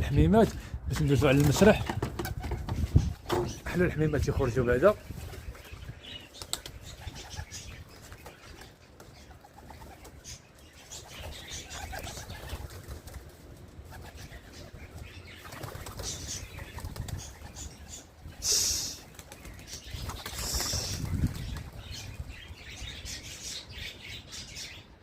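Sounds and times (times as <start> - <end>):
pigeon wings flapping: 11.0 - 17.6, 18.9 - 21.9.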